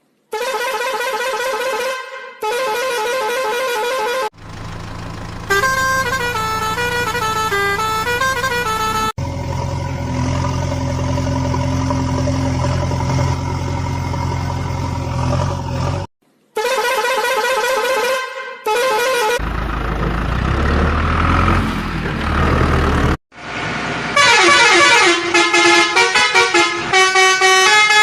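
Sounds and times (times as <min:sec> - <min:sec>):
sustained horn-like tone: 0:05.4 - 0:19.4, 0:24.2 - 0:28.0.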